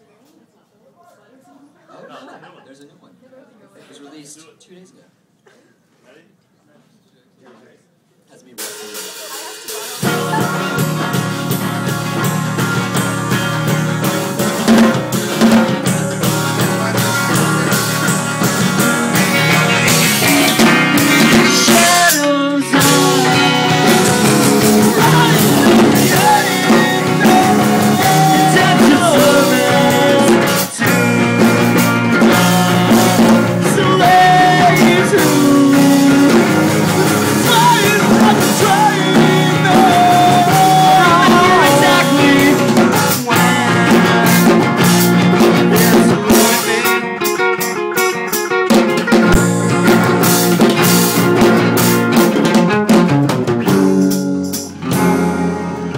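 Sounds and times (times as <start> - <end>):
drum kit: 8.6 - 55.9
person singing: 9.4 - 13.8, 16.8 - 48.6
guitars: 9.7 - 55.9.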